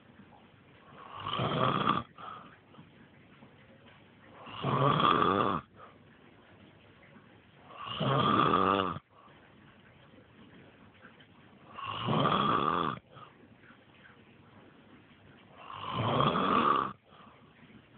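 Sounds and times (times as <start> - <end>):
quiet breathing: 0.0 - 17.9
man snoring: 1.1 - 2.1, 4.5 - 5.7, 7.8 - 9.0, 11.8 - 13.0, 15.7 - 17.0.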